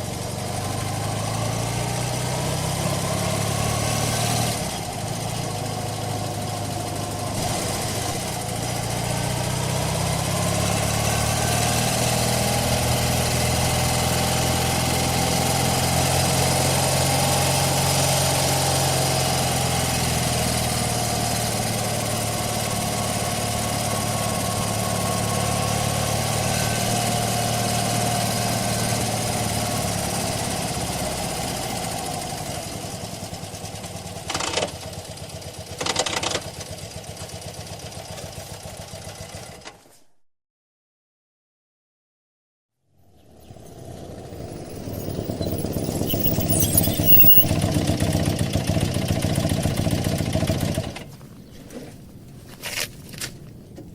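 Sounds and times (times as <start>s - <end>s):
motorcycle engine running: 0.0s - 39.6s, 43.0s - 51.2s.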